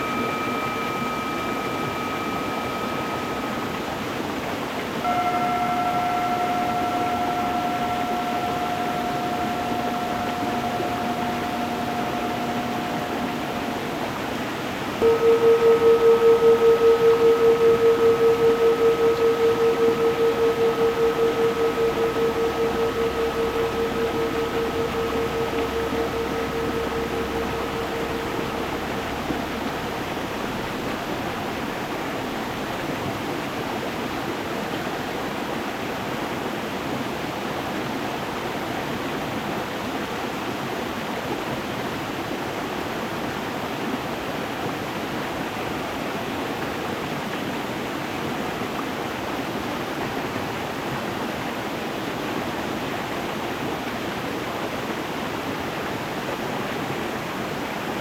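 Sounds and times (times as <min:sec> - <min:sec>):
faint ringing tone: 0:00.0 - 0:33.3.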